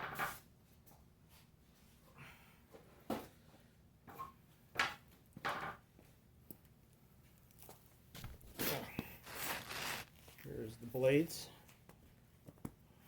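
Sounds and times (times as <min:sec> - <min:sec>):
parts handled in cardboard box: 0:08.5 - 0:10.6.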